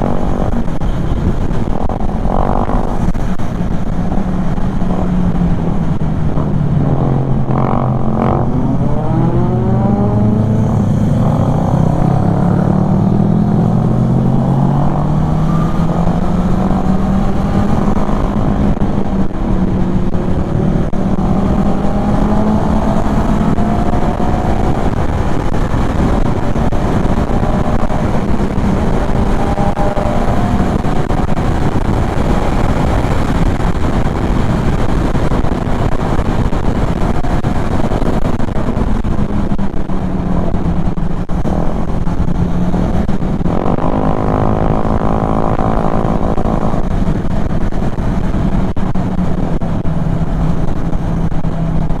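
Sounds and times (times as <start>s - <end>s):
wind and road noise: 0.0s - 52.0s.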